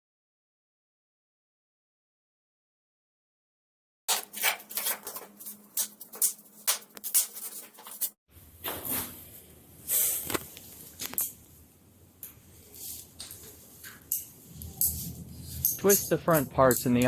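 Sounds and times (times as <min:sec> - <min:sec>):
plastic wrapping rustling and crinkling: 0:04.1 - 0:11.7, 0:12.4 - 0:15.9.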